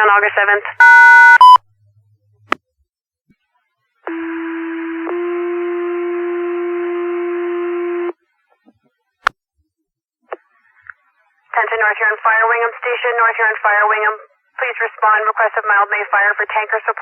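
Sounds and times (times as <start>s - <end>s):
two-tone paging tones over radio: 0.8s - 1.6s.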